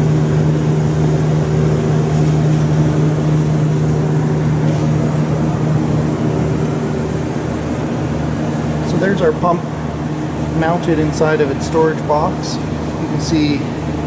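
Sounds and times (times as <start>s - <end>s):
loud mechanical drone: 0.0s - 14.0s.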